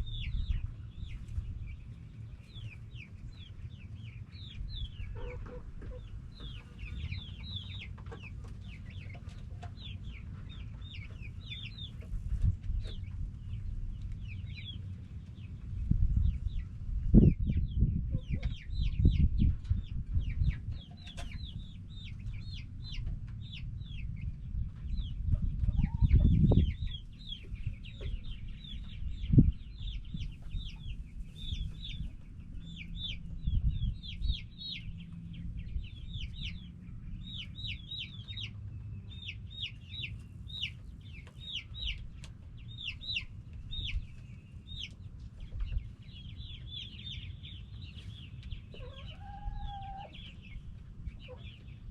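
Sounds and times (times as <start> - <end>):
low rumbling microphone noise: 0.0 - 7.7, 9.8 - 51.9
chickens calling: 0.0 - 51.9.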